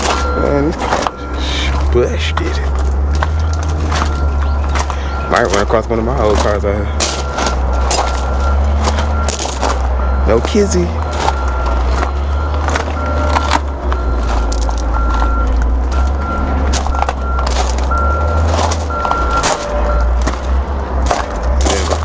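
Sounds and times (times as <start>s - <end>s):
vehicle backup alarm beeping: 0.0s - 22.0s
scattered clicks: 1.8s - 5.7s.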